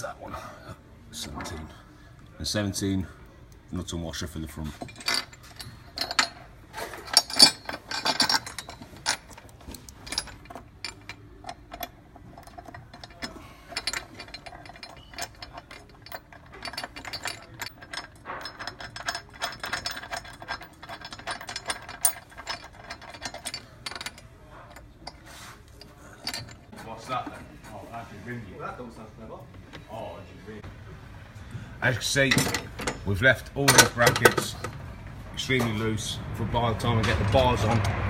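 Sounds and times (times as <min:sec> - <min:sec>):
metal fittings clinking: 0:04.7 - 0:27.4, 0:32.1 - 0:34.8.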